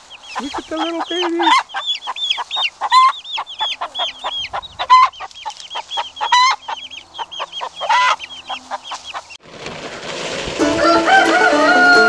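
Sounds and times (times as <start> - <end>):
chicks peeping: 0.0 - 9.4.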